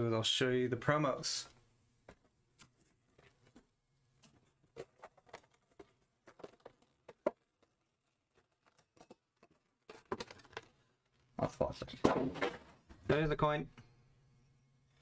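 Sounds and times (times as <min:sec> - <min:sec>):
handling cards and packaging: 0:02.0 - 0:11.5.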